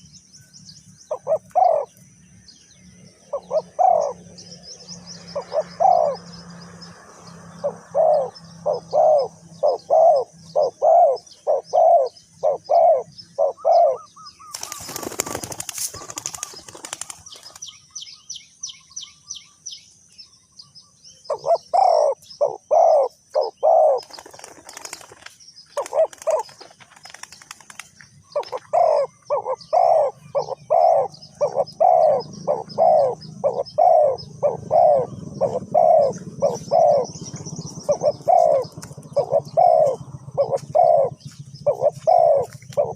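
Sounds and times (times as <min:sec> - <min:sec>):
doves cooing: 0:01.1 - 0:02.0, 0:03.3 - 0:04.6, 0:05.2 - 0:06.6, 0:07.4 - 0:17.6, 0:21.3 - 0:42.9
wings flapping: 0:14.5 - 0:17.7, 0:24.0 - 0:28.7.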